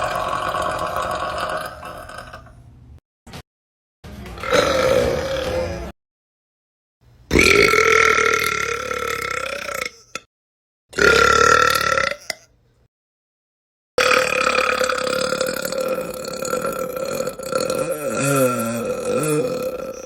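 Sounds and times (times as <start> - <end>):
person burping: 0.0 - 2.6, 4.4 - 5.9, 7.3 - 10.3, 11.0 - 12.5, 14.0 - 20.0.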